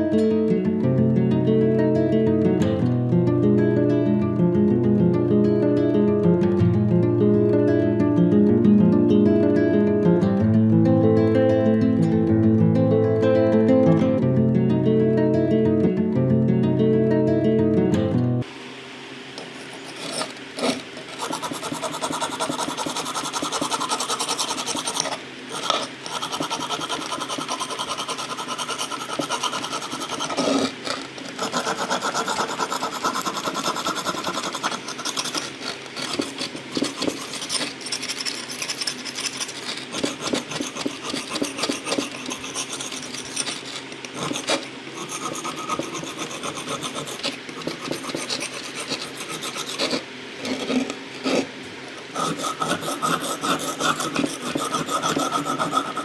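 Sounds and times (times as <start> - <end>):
abrasive tool rasping on steel: 19.4 - 51.5, 52.1 - 56.0.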